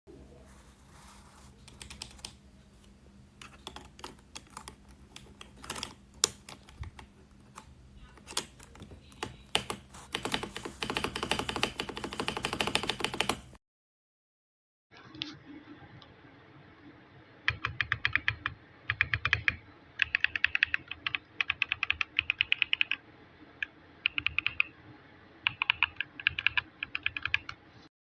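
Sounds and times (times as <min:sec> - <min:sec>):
mechanical keyboard typing: 0:01.6 - 0:02.4, 0:03.4 - 0:13.6, 0:17.5 - 0:23.0, 0:24.0 - 0:24.7, 0:25.4 - 0:27.6.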